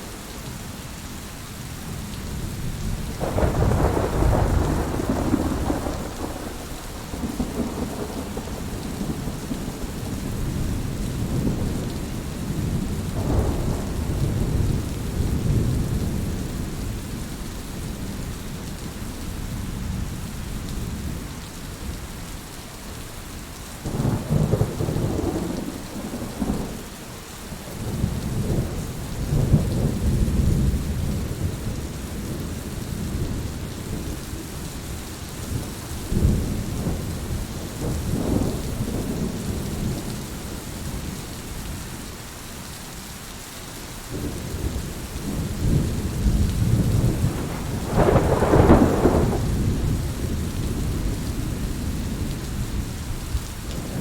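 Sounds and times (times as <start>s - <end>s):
heavy rain falling: 0.0s - 54.0s
low rumbling thunder: 2.2s - 18.6s, 23.8s - 41.7s, 44.1s - 54.0s.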